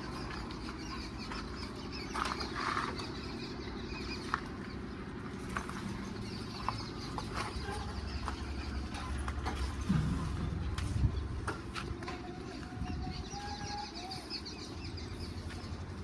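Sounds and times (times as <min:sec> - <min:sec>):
birds chirping: 0:00.0 - 0:16.0
steady low rumble: 0:03.2 - 0:14.0.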